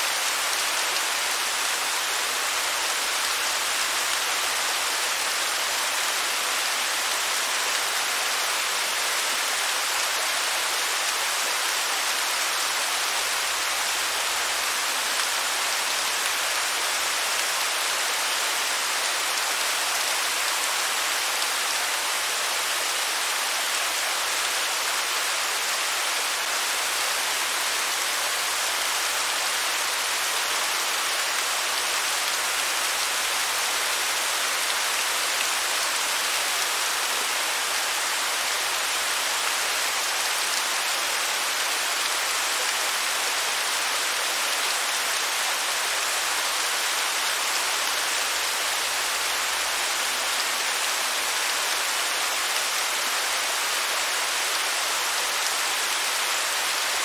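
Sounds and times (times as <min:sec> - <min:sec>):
waterfall hissing: 0:00.0 - 0:57.0.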